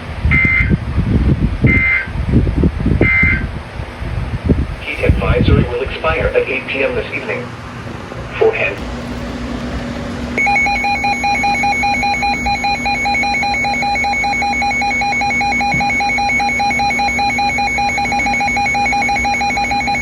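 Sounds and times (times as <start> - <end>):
pulsing warbling alarm tone: 8.8 - 20.0.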